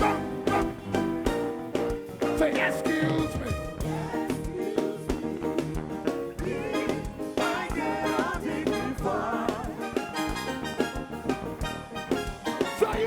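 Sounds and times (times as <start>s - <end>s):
gospel band playing: 0.0s - 13.0s
singers with vocal runs: 2.4s - 10.5s.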